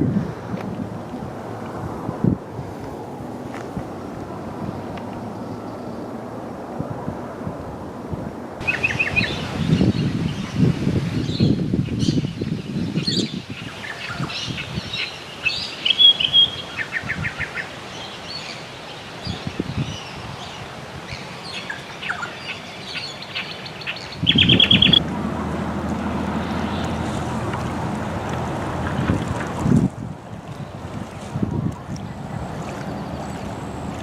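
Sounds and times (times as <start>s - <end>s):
wild birds chirping and whistling: 8.6s - 10.6s, 11.2s - 25.0s
rapid bird trills: 22.5s - 25.0s.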